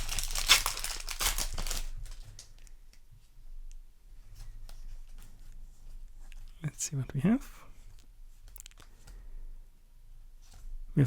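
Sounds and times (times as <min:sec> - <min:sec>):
cards rustling and flicking: 0:00.0 - 0:02.6
foil wrapper crinkling and tearing: 0:00.0 - 0:03.0.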